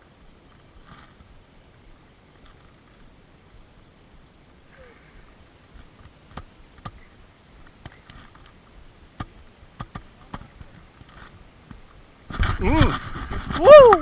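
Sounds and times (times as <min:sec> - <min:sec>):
faint hush: 0:04.6 - 0:05.6.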